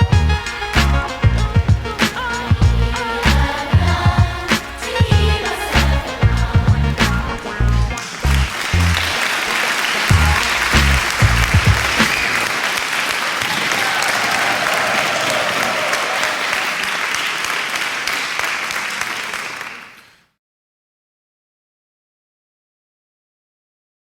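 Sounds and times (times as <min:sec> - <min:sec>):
music with a beat: 0:00.0 - 0:09.1, 0:10.1 - 0:12.4
audience applause: 0:07.5 - 0:20.2.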